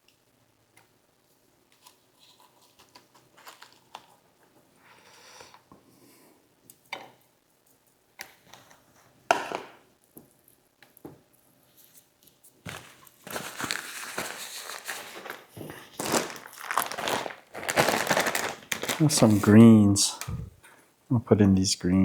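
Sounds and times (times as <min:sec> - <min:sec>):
plastic packaging crinkling: 0:01.8 - 0:04.3, 0:12.6 - 0:20.5.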